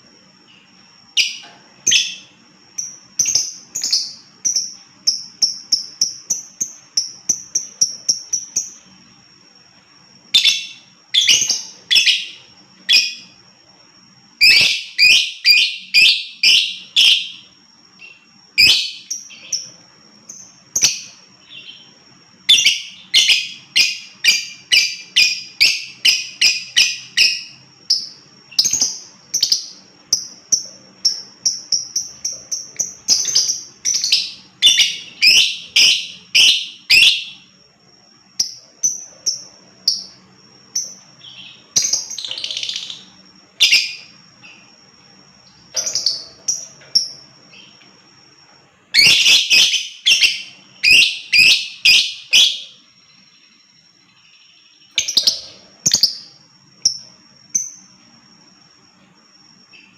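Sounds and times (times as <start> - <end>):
thin steady high tone: 0.0 - 59.9
lovebird chirping rapidly: 32.8 - 37.4, 49.0 - 52.8.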